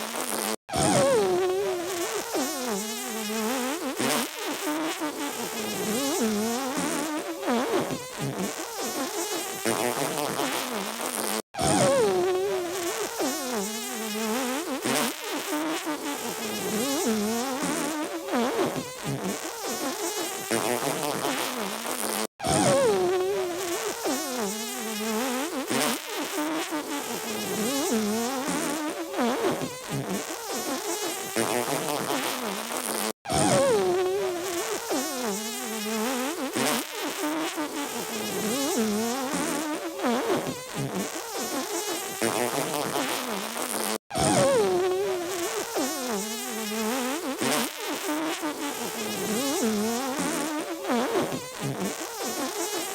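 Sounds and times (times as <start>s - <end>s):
buzzy fart-like noises: 0.0s - 52.9s.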